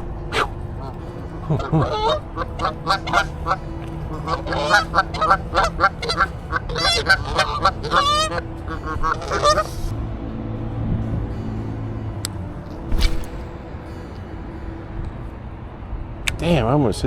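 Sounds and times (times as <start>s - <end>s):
geese honking: 0.0s - 9.9s.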